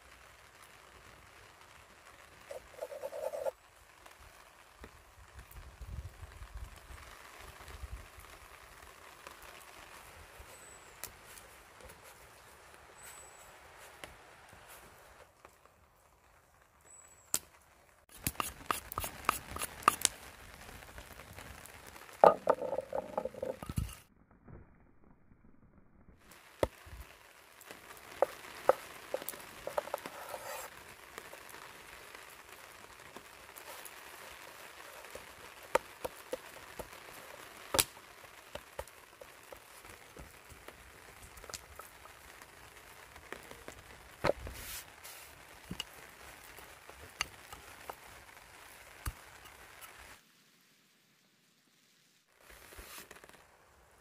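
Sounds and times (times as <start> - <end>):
steady hiss: 18.1 - 24.0, 26.3 - 54.0.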